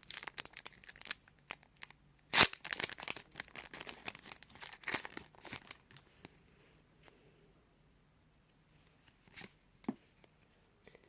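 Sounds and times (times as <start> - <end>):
foil wrapper crinkling: 0.0 - 6.0.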